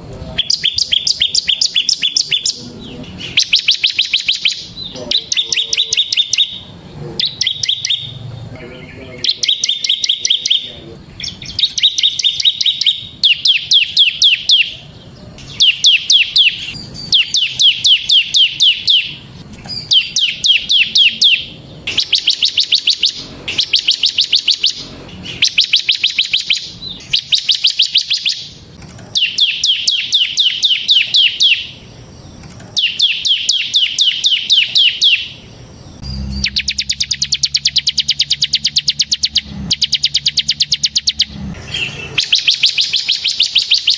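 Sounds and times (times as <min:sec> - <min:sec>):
bird singing rapid high notes: 0:00.3 - 0:43.9
low hum: 0:14.8 - 0:27.5, 0:35.3 - 0:43.2.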